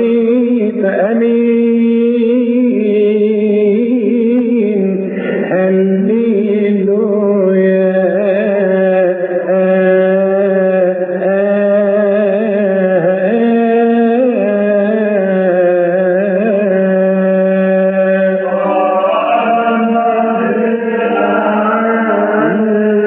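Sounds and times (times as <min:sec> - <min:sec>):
men chanting liturgical melody: 0:07.3 - 0:23.0.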